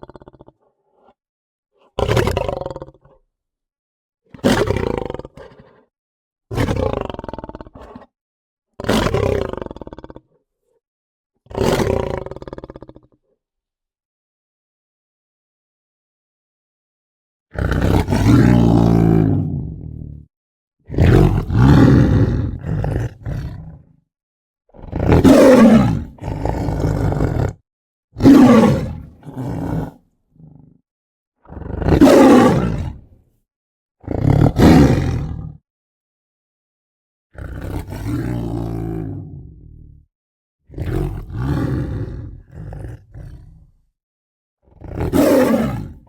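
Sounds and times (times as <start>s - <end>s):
big cat roars and snarls: 0.0s - 1.2s, 1.8s - 3.2s, 4.3s - 5.9s, 6.5s - 8.1s, 8.8s - 10.4s, 11.5s - 13.3s, 17.5s - 24.0s, 24.7s - 27.6s, 28.2s - 30.8s, 31.4s - 33.2s, 34.0s - 35.6s, 37.3s - 40.1s, 40.7s - 44.0s, 44.7s - 46.0s.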